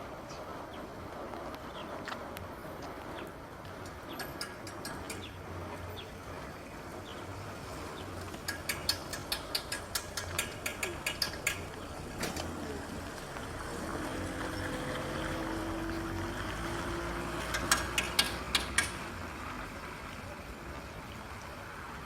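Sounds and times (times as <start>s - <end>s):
steady low street hum: 0.0s - 22.0s
quick sharp clicks: 8.3s - 12.5s, 17.5s - 19.0s.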